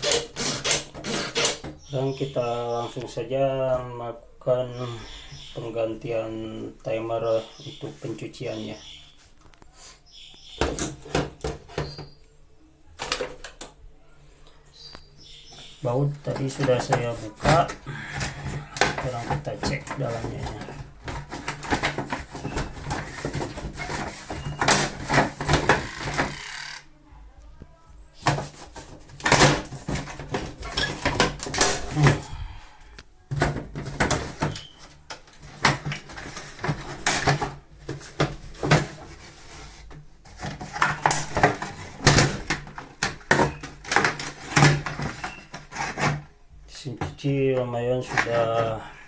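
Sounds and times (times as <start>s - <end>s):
hands handling plastic panel: 16.2s - 26.8s, 28.2s - 32.3s.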